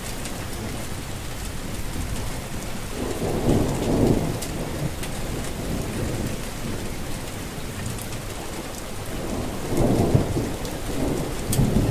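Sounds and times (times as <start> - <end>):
low rumble of thunder: 0.0 - 11.9
steady rain falling: 0.0 - 11.9.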